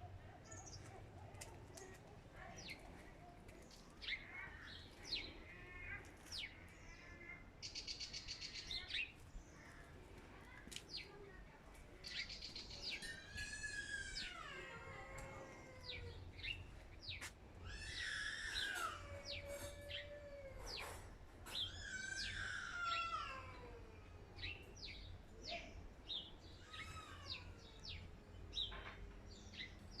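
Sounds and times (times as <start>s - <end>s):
birds chirping: 0.0s - 20.1s.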